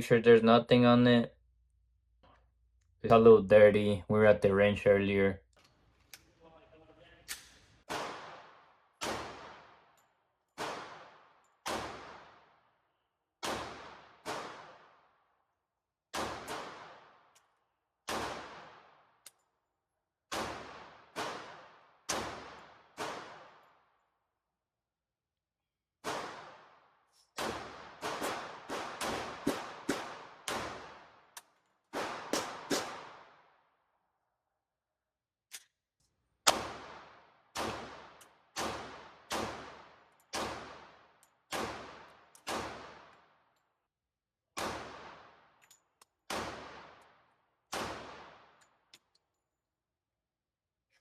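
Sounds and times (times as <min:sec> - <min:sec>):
pistol shots echoing: 0:07.4 - 0:10.0, 0:10.6 - 0:12.6, 0:13.4 - 0:15.1, 0:16.1 - 0:17.3, 0:18.0 - 0:19.1, 0:20.3 - 0:23.8, 0:26.0 - 0:26.8, 0:27.4 - 0:33.5, 0:36.5 - 0:43.2, 0:44.6 - 0:45.5, 0:46.3 - 0:48.6.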